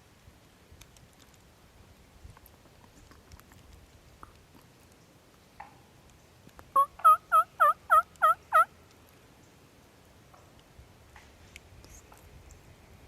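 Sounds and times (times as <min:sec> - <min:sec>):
turkey yelping: 0:06.8 - 0:08.7.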